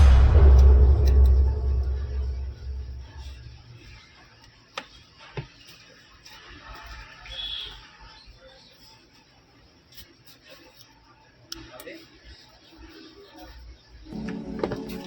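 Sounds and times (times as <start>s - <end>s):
low rumbling intro music: 0.0s - 3.8s.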